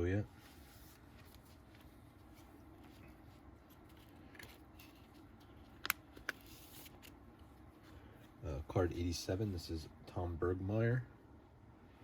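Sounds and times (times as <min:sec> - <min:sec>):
trading cards rustling: 0:03.6 - 0:07.2.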